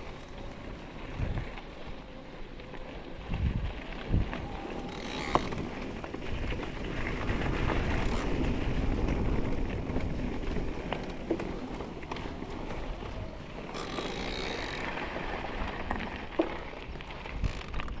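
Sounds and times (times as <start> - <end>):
bike tyre and chassis rattle: 0.0 - 18.0
wind on microphone: 3.2 - 15.6.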